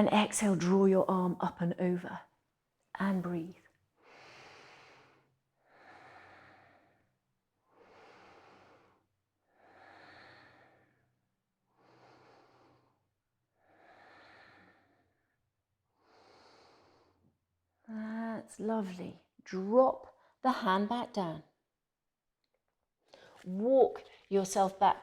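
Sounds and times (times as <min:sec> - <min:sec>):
woman breathing slowly: 0:04.0 - 0:15.4, 0:16.0 - 0:17.4.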